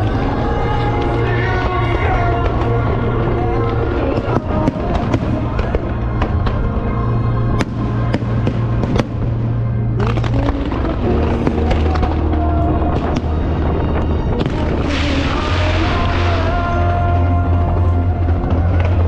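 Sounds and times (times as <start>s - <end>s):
fireworks bangs and crackles: 0.0s - 19.0s
hissing crackle: 0.0s - 19.0s
music with held notes and bass: 0.0s - 19.0s.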